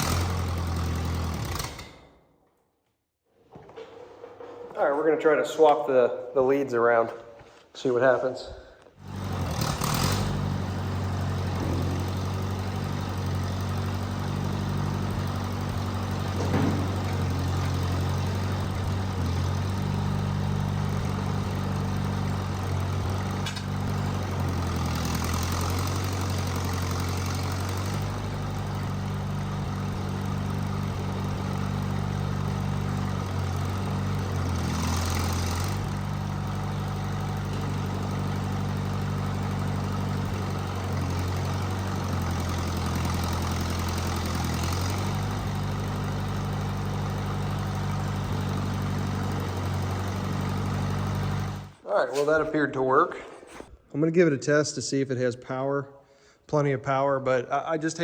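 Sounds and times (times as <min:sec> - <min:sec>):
tractor engine idling: 0:00.0 - 0:02.0, 0:09.0 - 0:53.0.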